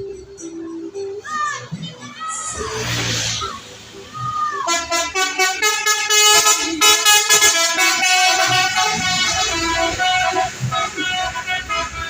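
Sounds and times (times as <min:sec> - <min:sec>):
musical bus air horn tune: 0:04.6 - 0:12.0.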